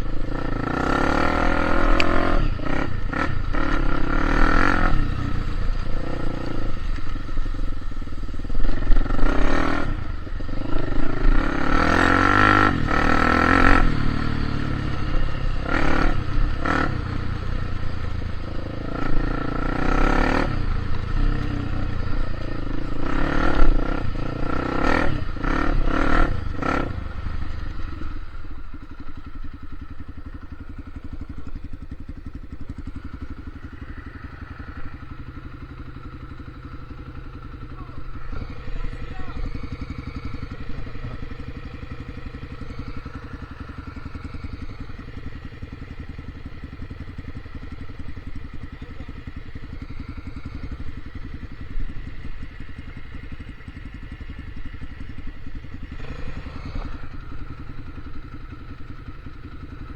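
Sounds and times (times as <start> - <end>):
vehicle engine revving unevenly: 33.0 - 59.9.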